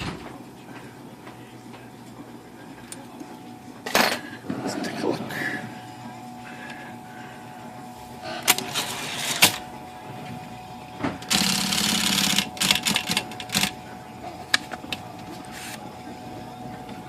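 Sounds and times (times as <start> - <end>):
typewriter motor humming: 8.3 - 9.6, 11.2 - 13.8.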